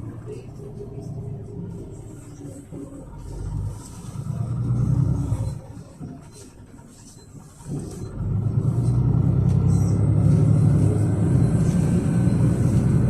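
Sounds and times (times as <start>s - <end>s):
bus engine rumble: 0.0s - 13.0s.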